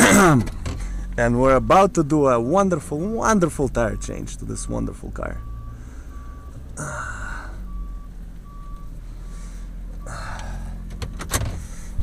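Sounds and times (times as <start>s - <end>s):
low engine rumble: 0.0s - 12.0s
reversing alarm beeping: 1.4s - 2.0s, 3.0s - 11.2s.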